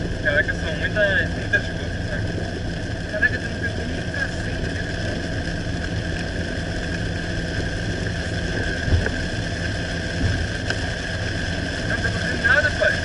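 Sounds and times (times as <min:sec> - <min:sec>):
car engine and road noise: 0:00.0 - 0:13.0
low thumps: 0:08.8 - 0:09.3.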